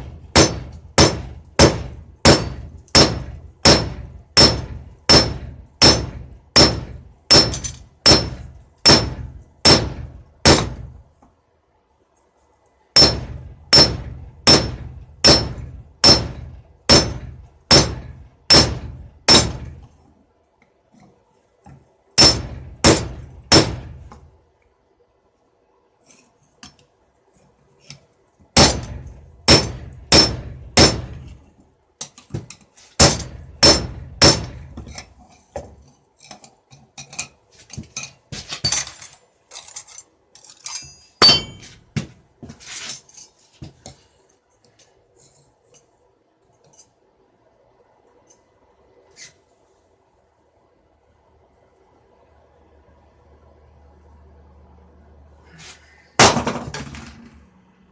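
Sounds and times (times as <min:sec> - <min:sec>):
hammer striking metal on anvil: 0:00.0 - 0:10.9, 0:13.0 - 0:19.8, 0:22.2 - 0:24.0, 0:28.6 - 0:31.2, 0:33.0 - 0:34.8, 0:41.2 - 0:41.8.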